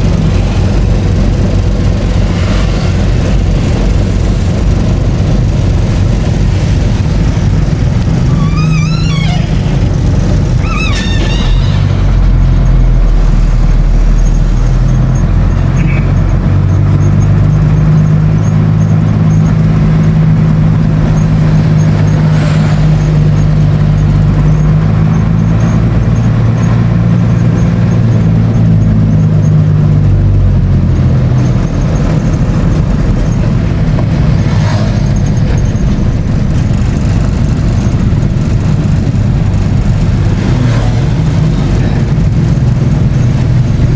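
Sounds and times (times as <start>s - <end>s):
road noise: 0.0s - 43.9s
vehicle engine running: 0.0s - 43.9s
wavering high squeal: 8.2s - 16.3s.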